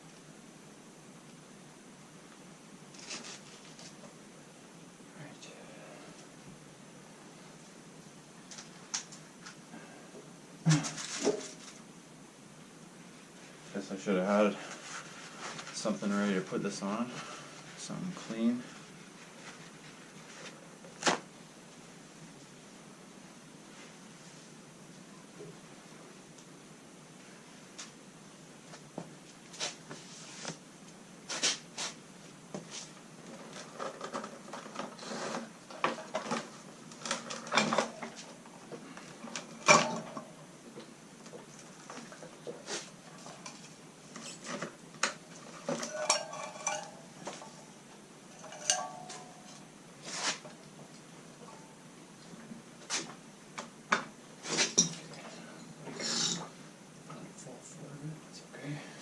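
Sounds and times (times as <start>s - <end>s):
metal tools clinking and clattering: 45.5s - 47.6s, 48.3s - 49.7s
loud metal clank: 48.4s - 49.6s.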